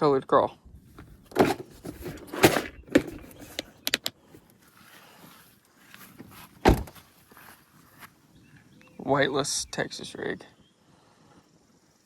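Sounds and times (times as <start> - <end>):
loud thump: 6.6 - 7.0.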